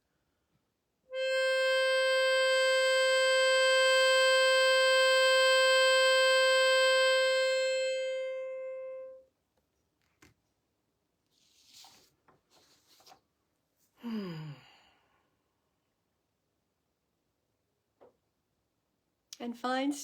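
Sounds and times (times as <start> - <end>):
sustained musical note: 1.2 - 9.2.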